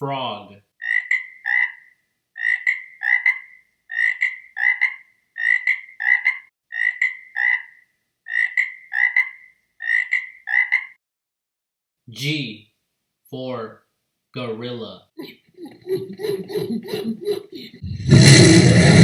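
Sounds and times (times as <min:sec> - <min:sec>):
frog croaking: 0:00.8 - 0:11.0.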